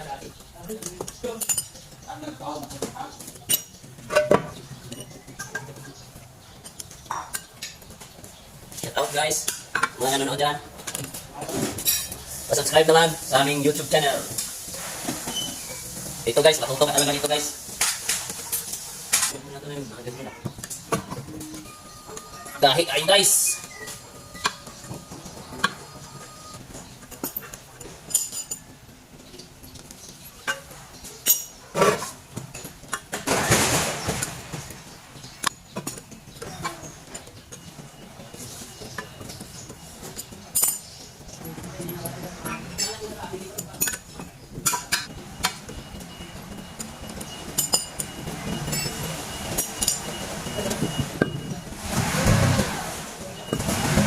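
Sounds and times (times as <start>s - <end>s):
metal tools clinking and knocking: 0.8s - 2.2s, 3.0s - 7.8s, 11.8s - 12.2s, 20.6s - 29.5s, 35.4s - 50.2s.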